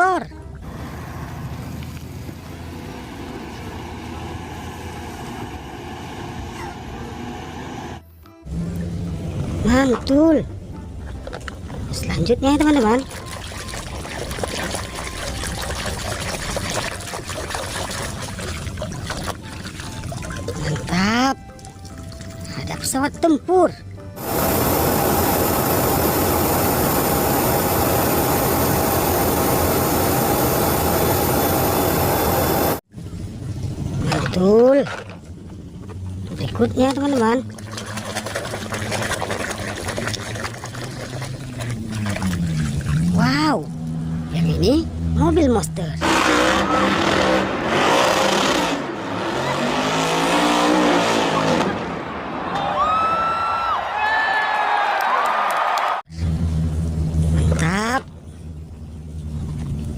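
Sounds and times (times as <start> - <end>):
car engine revving: 0.7 - 9.7, 46.0 - 52.5
jet engine noise: 24.2 - 34.0
noisy hiss: 24.2 - 34.0.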